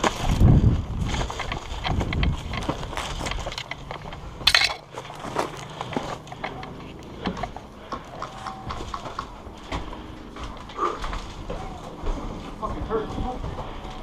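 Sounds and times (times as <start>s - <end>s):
gear clattering: 0.0s - 7.7s
footsteps crunching on dry ground: 0.0s - 14.0s.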